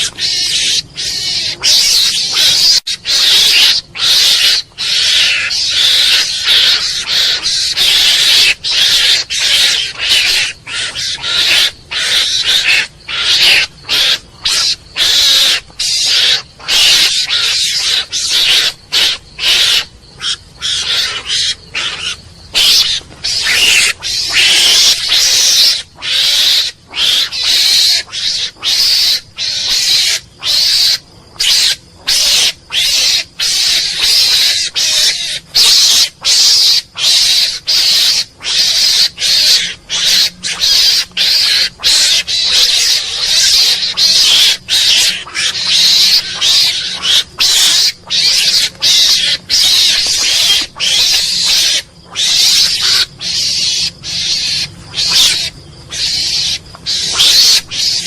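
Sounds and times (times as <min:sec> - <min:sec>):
mongoose harsh hissing calls: 0:00.0 - 0:58.0.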